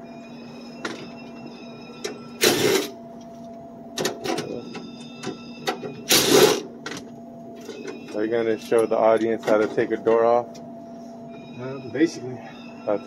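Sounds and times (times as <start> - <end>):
steady electrical hum: 0.0 - 13.0
short harsh noise bursts: 6.1 - 6.6.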